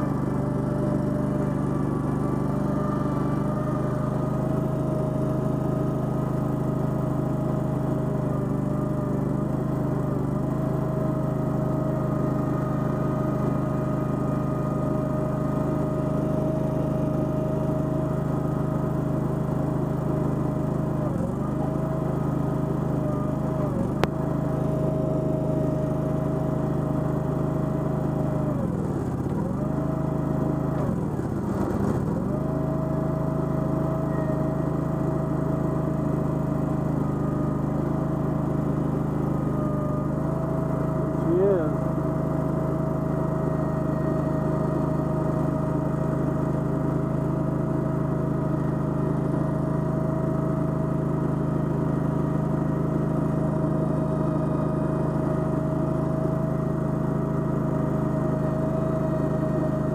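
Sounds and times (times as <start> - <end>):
skid steer engine running: 0.0 - 59.9.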